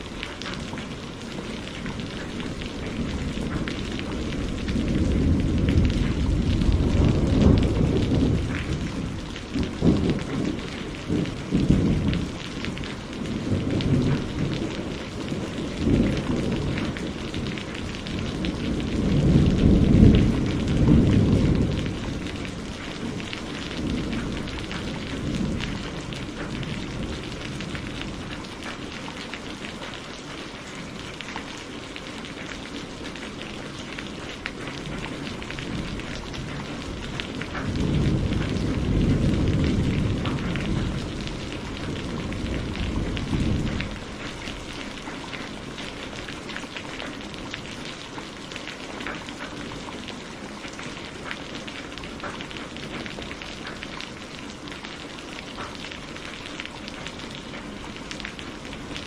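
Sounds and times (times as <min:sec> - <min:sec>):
thunder rumbling: 0:00.0 - 0:29.6, 0:32.4 - 0:47.6
rain falling: 0:00.0 - 0:59.0.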